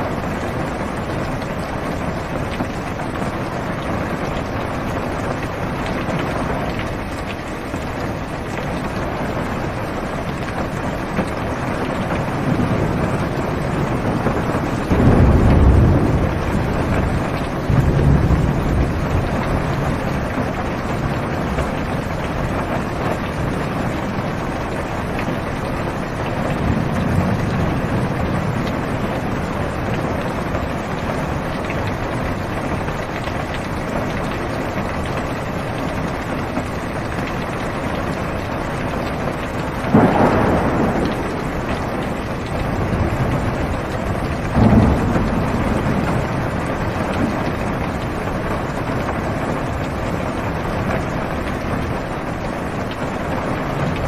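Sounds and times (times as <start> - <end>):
rain on car roof: 0.0 - 54.0
sharp thunderclaps: 11.2 - 24.0, 24.7 - 32.1, 39.2 - 49.5.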